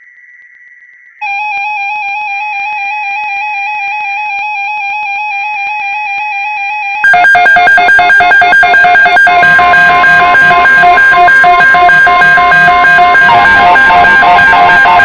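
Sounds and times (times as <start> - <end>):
buzzy electronic beeping: 7.0 - 15.0
harsh two-tone beeping: 7.0 - 15.0.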